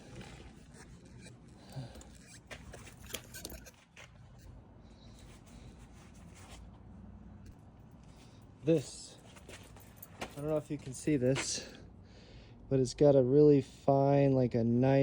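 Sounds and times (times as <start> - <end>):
small parts clicking and scraping: 0.0 - 6.0
low background hum: 0.0 - 15.0.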